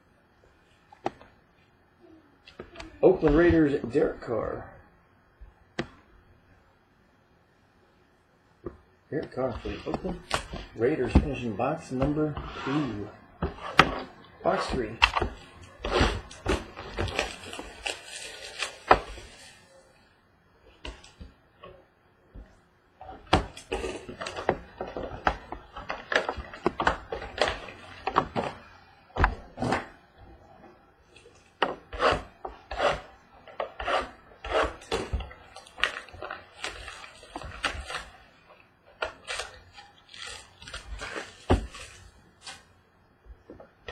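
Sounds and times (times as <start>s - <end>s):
packaging scrapes and rustles: 12.3s - 13.8s, 15.6s - 19.7s, 32.0s - 38.2s, 39.2s - 42.7s.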